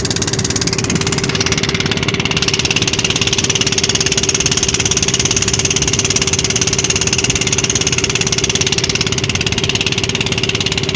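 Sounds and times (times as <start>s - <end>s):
engine idling: 0.0s - 10.9s.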